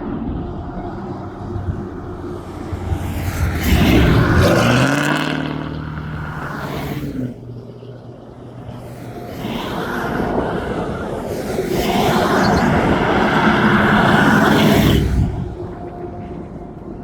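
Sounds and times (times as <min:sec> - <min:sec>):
locomotive diesel engine running: 0:00.0 - 0:09.3
turbocharger whining: 0:00.0 - 0:17.0.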